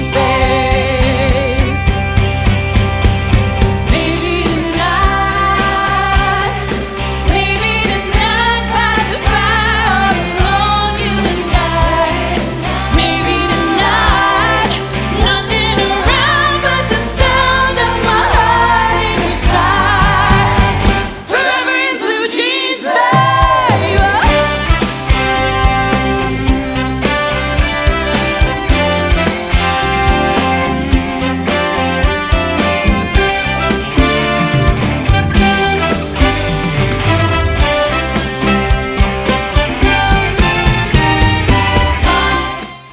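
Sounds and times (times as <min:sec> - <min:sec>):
person singing: 0:00.0 - 0:02.1, 0:03.9 - 0:27.2, 0:41.9 - 0:42.9
pop-rock band playing: 0:00.0 - 0:21.6, 0:23.0 - 0:42.9.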